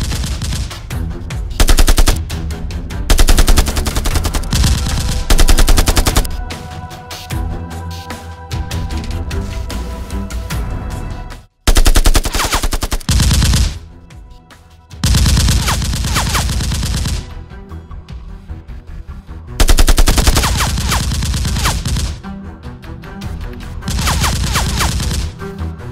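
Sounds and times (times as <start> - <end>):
machine-gun firing bursts: 0.0 - 0.9, 1.6 - 2.2, 3.1 - 6.4, 11.7 - 13.8, 15.0 - 17.3, 19.6 - 22.2, 23.9 - 25.4
background music: 0.0 - 25.9.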